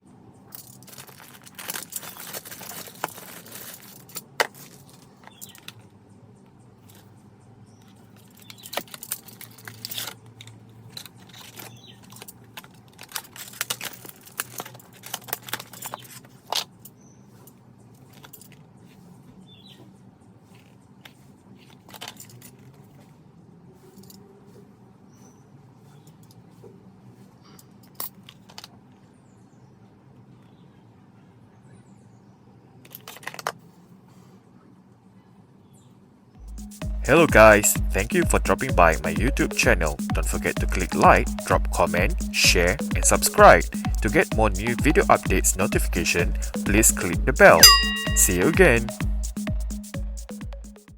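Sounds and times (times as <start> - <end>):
packaging crinkling and rattling: 0.6 - 5.8, 10.9 - 16.7.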